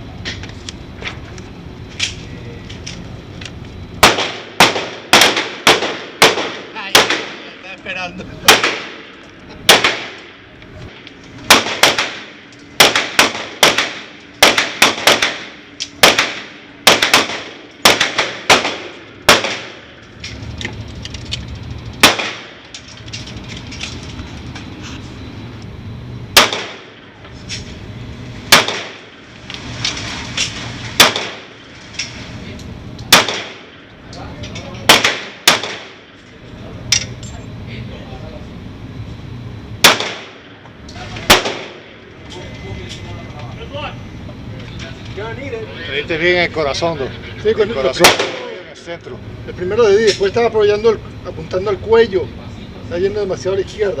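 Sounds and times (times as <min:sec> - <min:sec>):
gunshots with ringing tail: 0:04.0 - 0:07.7, 0:08.4 - 0:10.5, 0:11.5 - 0:20.0, 0:22.0 - 0:22.6, 0:26.3 - 0:27.1, 0:28.5 - 0:29.3, 0:31.0 - 0:31.6, 0:33.1 - 0:33.8, 0:34.8 - 0:36.1, 0:39.8 - 0:40.6, 0:41.2 - 0:42.0, 0:48.0 - 0:48.6.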